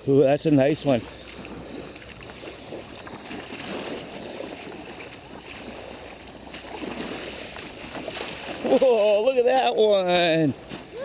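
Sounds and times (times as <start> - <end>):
small waves lapping at shore: 0.0 - 11.0.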